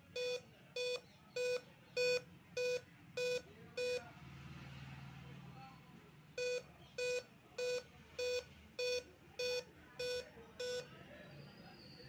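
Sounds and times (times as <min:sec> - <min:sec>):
laptop speaker beeping: 0:00.0 - 0:04.1, 0:06.4 - 0:11.0.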